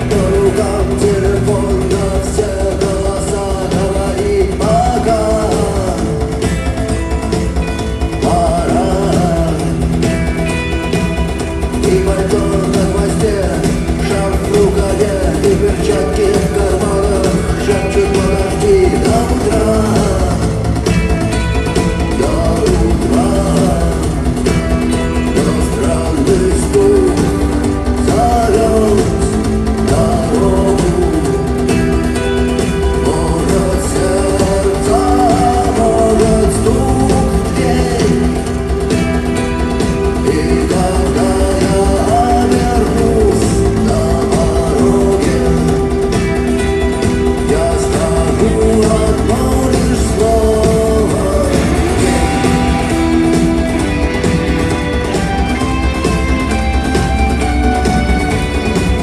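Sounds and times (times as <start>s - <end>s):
live rock band playing: 0.0s - 59.0s
person singing: 0.0s - 59.0s.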